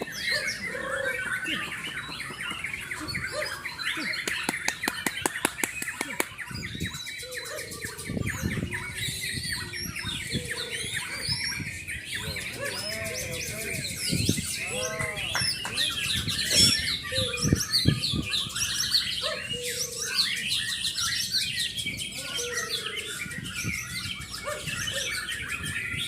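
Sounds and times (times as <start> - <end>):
songbirds chirping: 0.0 - 26.0
fast run of clicks: 4.2 - 6.4.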